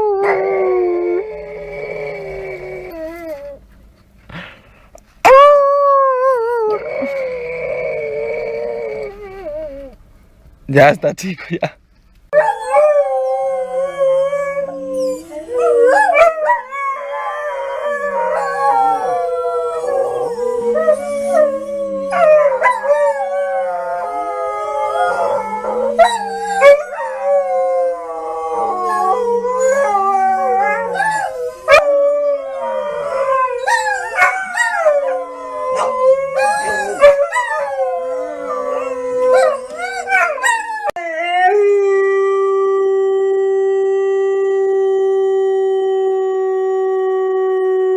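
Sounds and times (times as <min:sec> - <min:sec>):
dogs howling: 0:00.0 - 0:03.6, 0:12.3 - 0:47.9.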